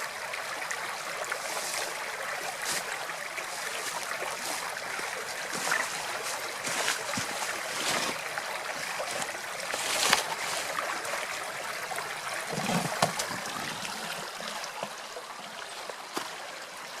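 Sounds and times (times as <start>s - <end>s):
small water splashes: 0.0s - 17.0s
stream water flowing and trickling: 0.0s - 17.0s.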